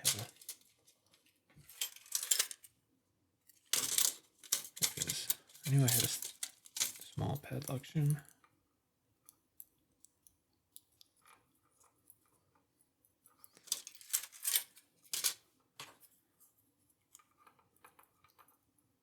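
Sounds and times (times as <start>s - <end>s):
metallic scraping and rattling: 3.7s - 7.1s.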